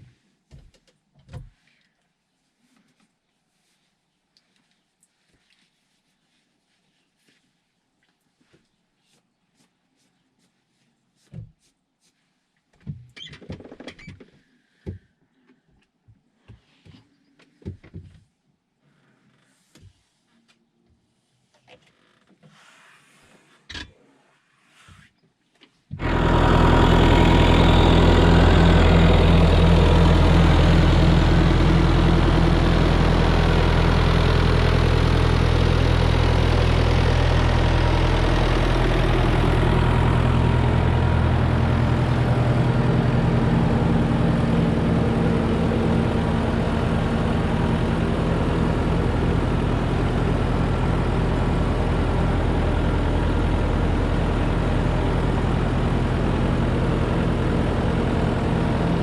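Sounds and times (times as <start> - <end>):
heavy farm machine engine: 26.0 - 59.0.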